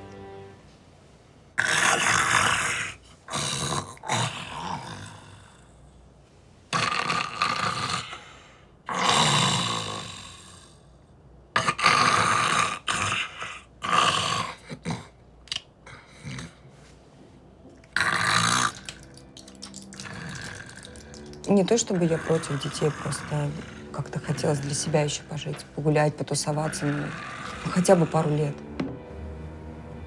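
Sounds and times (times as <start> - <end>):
person snoring loudly: 1.6 - 5.7, 6.7 - 10.8, 11.6 - 15.1, 17.9 - 19.2, 19.8 - 25.4, 26.4 - 28.7.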